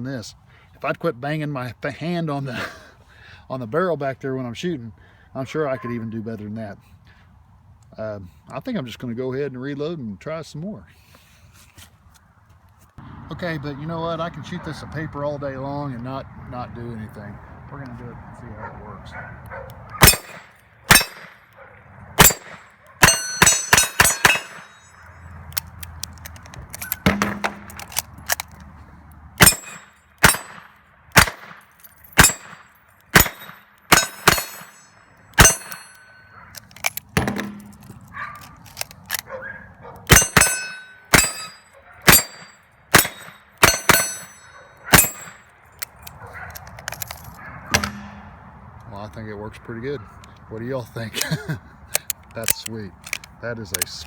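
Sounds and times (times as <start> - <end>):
bullets clanging on steel targets: 20.0 - 21.6, 22.2 - 25.2, 26.4 - 28.5, 29.4 - 39.2, 40.1 - 48.3
revolver shots: 27.0 - 27.8, 37.0 - 38.0, 47.7 - 48.4.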